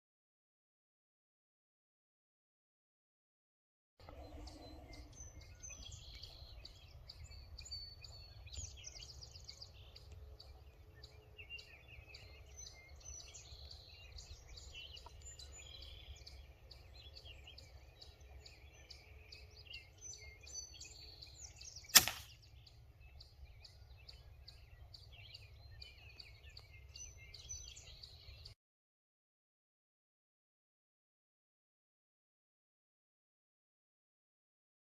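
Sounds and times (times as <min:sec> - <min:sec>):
birds chirping and singing: 0:04.0 - 0:28.6
air rifle shot: 0:21.9 - 0:22.4.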